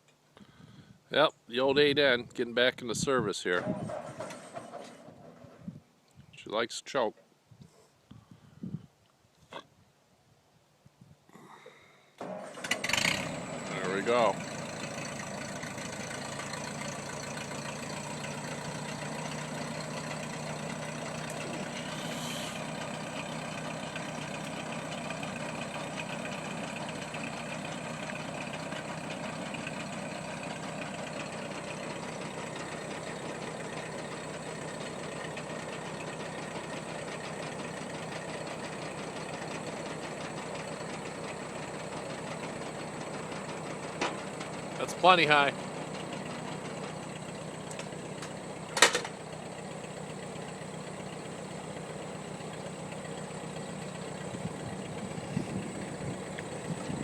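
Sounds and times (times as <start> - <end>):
tractor engine running: 2.9 - 5.8, 12.2 - 57.0
brief high hiss: 21.8 - 22.7.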